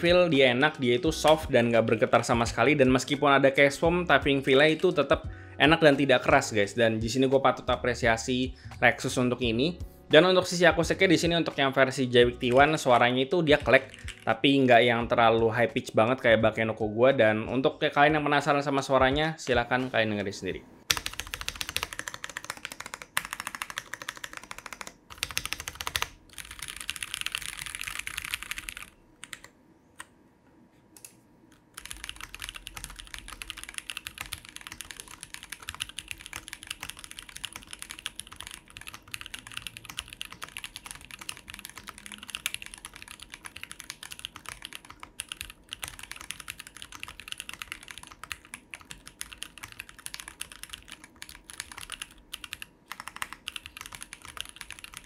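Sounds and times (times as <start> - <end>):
mechanical keyboard typing: 20.9 - 29.5, 31.8 - 55.0.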